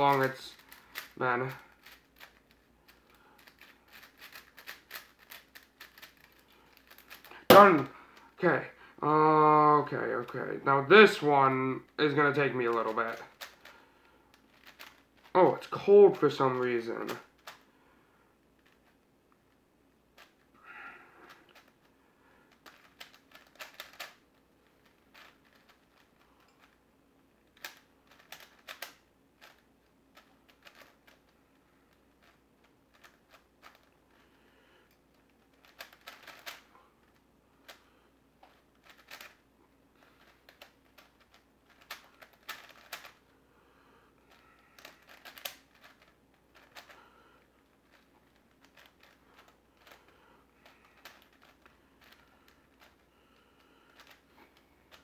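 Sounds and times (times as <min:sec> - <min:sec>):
plastic puzzle clicking: 0:00.0 - 0:07.9, 0:12.6 - 0:13.7, 0:14.3 - 0:15.3, 0:22.5 - 0:26.8, 0:27.4 - 0:34.2, 0:34.9 - 0:37.8, 0:38.5 - 0:39.4, 0:40.2 - 0:43.3, 0:44.3 - 0:47.0, 0:47.6 - 0:53.1, 0:53.9 - 0:54.2.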